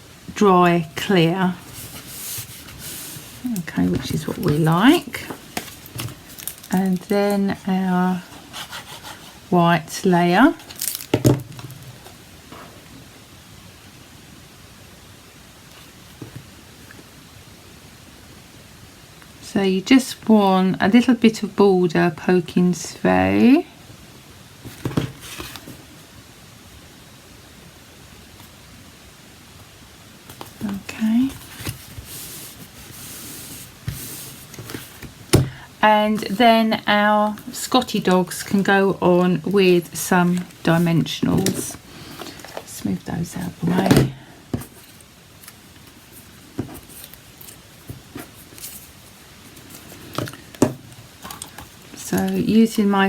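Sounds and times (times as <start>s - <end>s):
faint steady hiss: 0.0s - 53.0s
cardstock tapping and rustling: 1.7s - 7.2s, 24.6s - 25.7s.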